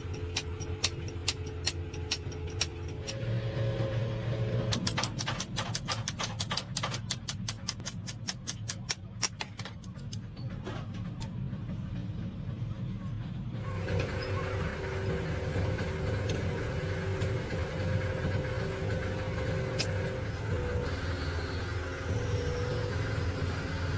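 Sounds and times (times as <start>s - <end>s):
low engine rumble: 0.0s - 23.9s
fast sharp clicks: 4.7s - 10.2s
steady hum with held tones: 13.6s - 23.9s.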